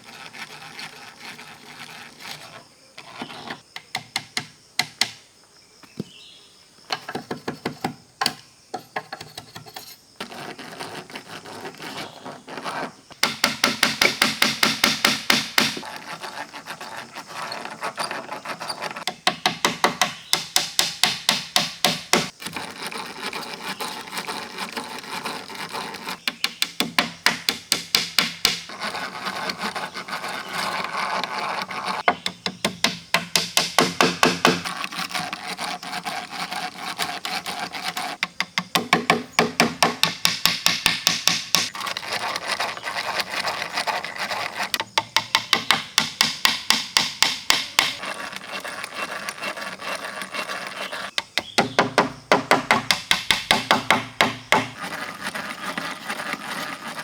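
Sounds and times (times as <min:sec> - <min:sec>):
rapid hard strikes on wood: 0:03.8 - 0:05.2, 0:13.2 - 0:15.9, 0:19.1 - 0:22.4, 0:26.3 - 0:28.7, 0:32.1 - 0:34.6, 0:38.2 - 0:41.7, 0:44.9 - 0:48.0, 0:51.2 - 0:54.8.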